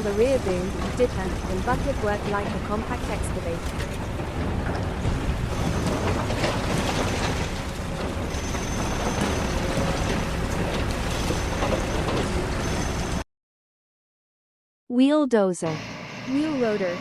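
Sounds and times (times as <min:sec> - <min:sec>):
diesel engine rumble: 0:00.0 - 0:13.2.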